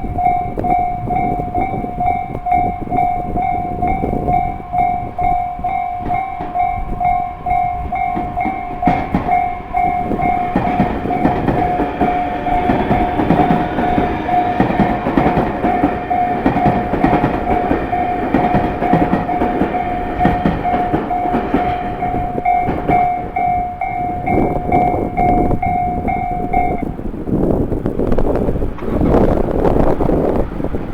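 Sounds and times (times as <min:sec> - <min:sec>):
level-crossing alarm bell ringing: 0:00.0 - 0:27.1
train wheels rumbling and clacking: 0:00.0 - 0:30.9.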